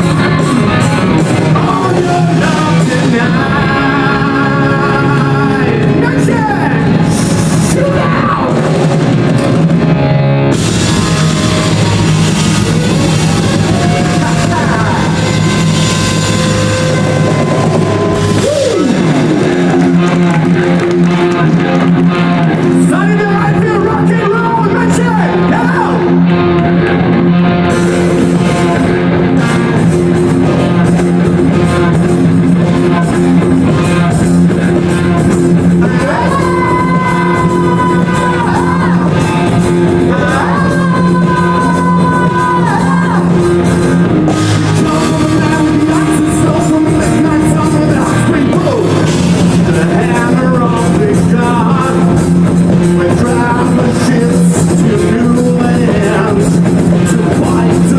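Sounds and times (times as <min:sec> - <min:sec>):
person singing: 0:00.0 - 0:08.8, 0:35.0 - 0:57.9
rock music with electric guitar: 0:00.0 - 0:57.9.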